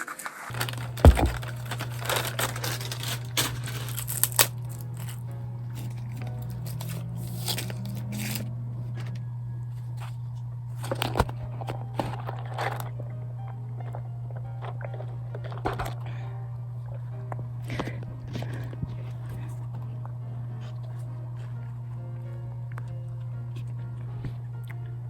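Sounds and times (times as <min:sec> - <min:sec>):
crinkling and tearing handling noises: 0:00.0 - 0:09.2, 0:09.8 - 0:13.0
steady low hum: 0:00.5 - 0:25.0.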